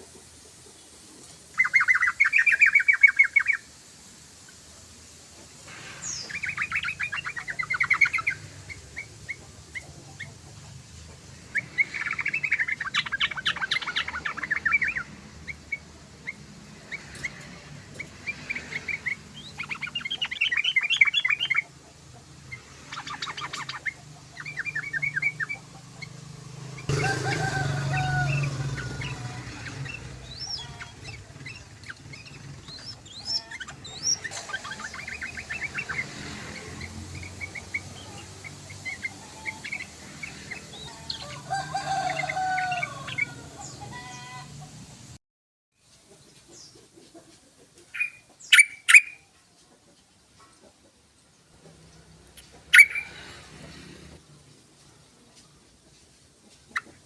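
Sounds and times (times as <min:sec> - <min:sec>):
bird singing bubbling chatter: 0:01.5 - 0:03.7, 0:52.6 - 0:53.2
rustling noise: 0:54.6 - 0:57.0.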